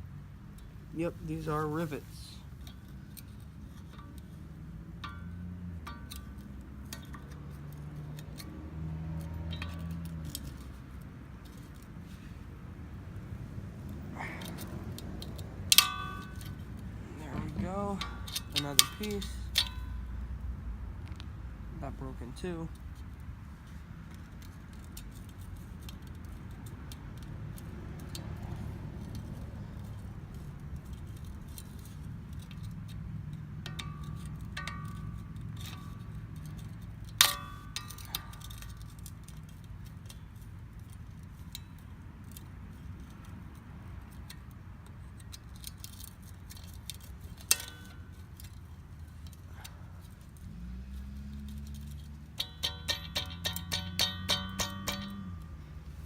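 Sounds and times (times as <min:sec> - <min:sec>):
metallic clinks and taps: 0:01.4 - 0:12.2, 0:14.0 - 0:20.4, 0:22.7 - 0:56.0
sharp ringing metal strike: 0:52.4 - 0:55.8.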